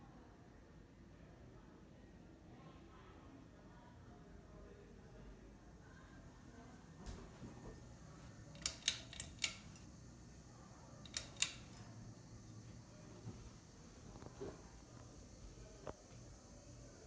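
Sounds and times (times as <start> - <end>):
fan low hum: 0.0 - 17.0
fan switch clicks: 8.5 - 9.9, 11.0 - 11.9.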